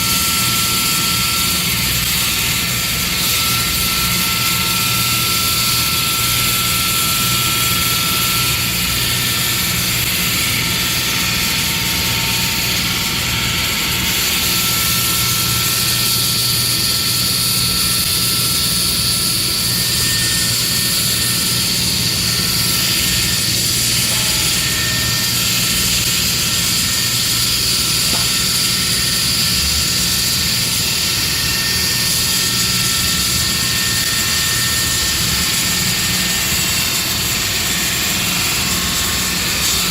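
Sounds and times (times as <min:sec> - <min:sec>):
diamond drill cutting rock: 0:00.0 - 0:39.9.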